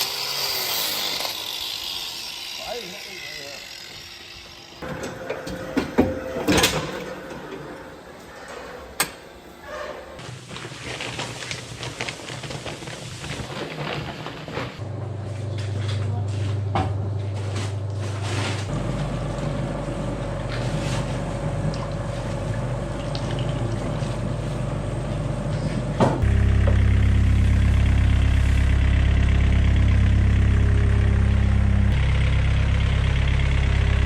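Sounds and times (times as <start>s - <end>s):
machine engine humming: 14.8s - 34.0s.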